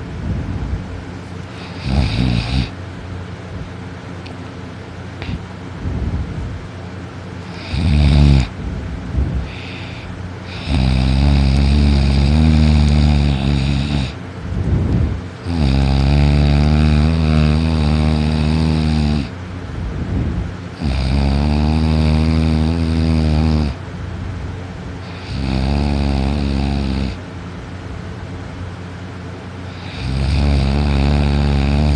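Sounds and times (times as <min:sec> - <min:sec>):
person snoring loudly: 0:01.6 - 0:02.8, 0:07.5 - 0:08.6, 0:09.4 - 0:14.2, 0:15.4 - 0:19.3, 0:20.8 - 0:23.8, 0:25.1 - 0:27.2, 0:29.7 - 0:31.9
quiet breathing: 0:09.3 - 0:11.4.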